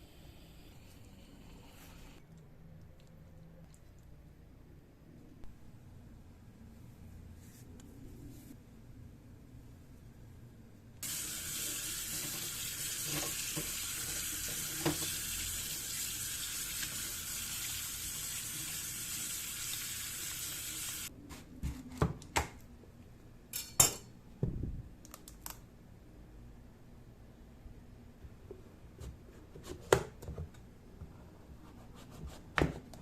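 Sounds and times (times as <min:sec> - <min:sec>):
kitchen tap running: 0:11.0 - 0:21.1.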